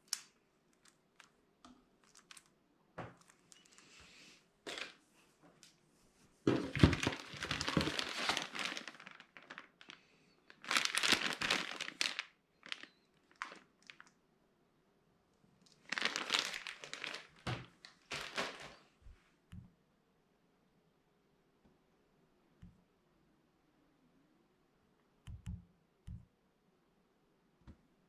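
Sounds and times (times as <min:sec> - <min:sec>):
packaging crinkling and tearing: 0:02.0 - 0:02.5, 0:03.2 - 0:03.9, 0:06.7 - 0:14.1, 0:15.7 - 0:18.9.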